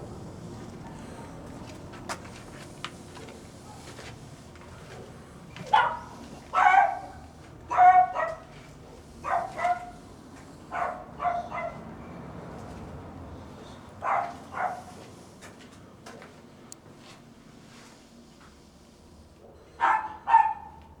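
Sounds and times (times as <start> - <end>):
dog barking: 5.6 - 8.5, 9.2 - 10.0, 10.7 - 11.9, 14.0 - 15.0, 19.6 - 20.8.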